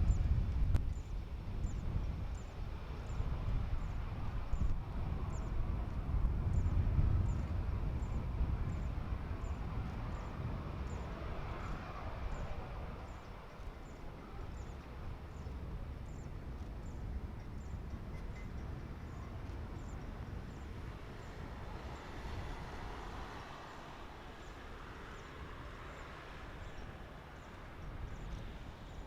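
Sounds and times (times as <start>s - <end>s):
faint high chirp: 17.4s - 20.6s.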